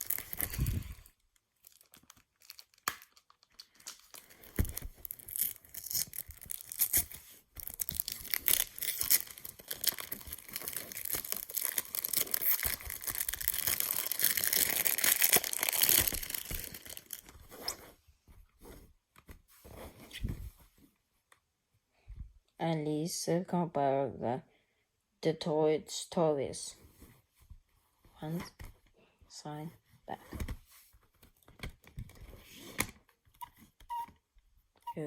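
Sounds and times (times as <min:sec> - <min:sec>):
packaging crinkling and tearing: 0:00.0 - 0:17.9.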